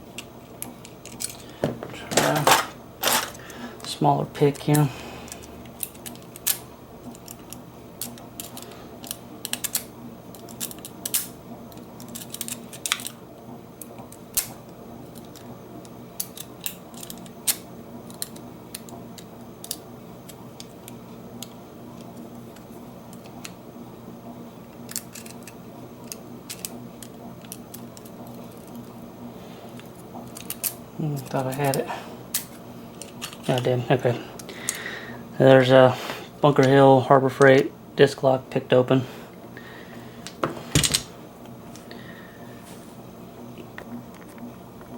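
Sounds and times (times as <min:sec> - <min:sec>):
faint steady hum: 0:00.0 - 0:44.9.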